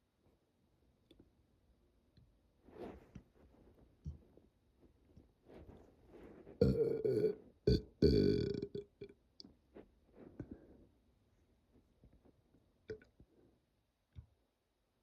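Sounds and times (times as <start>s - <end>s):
person burping: 6.6s - 9.1s.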